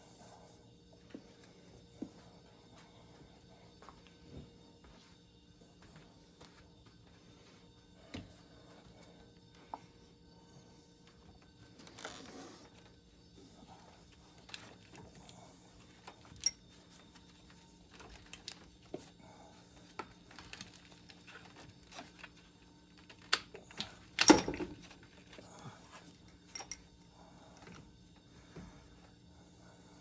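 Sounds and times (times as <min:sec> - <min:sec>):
hand tools clicking and clinking: 0:26.5 - 0:26.9.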